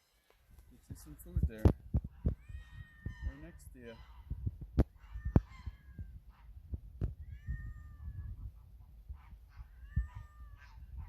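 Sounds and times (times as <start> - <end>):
dull low thuds: 0.6 - 11.0
cat meowing: 2.2 - 3.6, 5.0 - 6.2, 7.0 - 8.6, 9.6 - 11.0.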